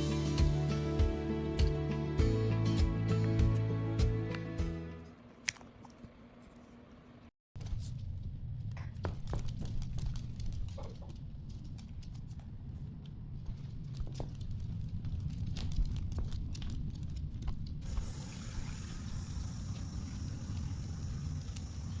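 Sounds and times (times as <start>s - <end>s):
wind rumble on camera: 7.6s - 22.0s
steady high hiss: 17.9s - 22.0s.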